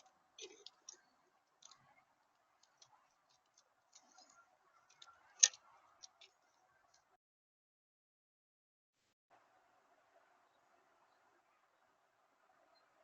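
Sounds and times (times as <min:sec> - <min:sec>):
birds pecking and cracking seeds: 0:00.0 - 0:07.2
faint steady hum: 0:00.0 - 0:07.2, 0:09.3 - 0:13.0.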